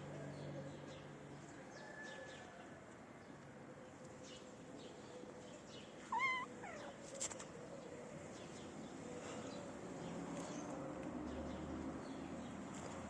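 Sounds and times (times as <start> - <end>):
cat meowing: 6.1 - 7.0.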